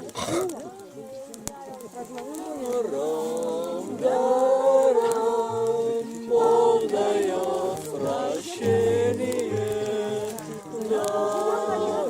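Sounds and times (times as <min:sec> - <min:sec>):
group singing a hymn: 0:02.1 - 0:12.0.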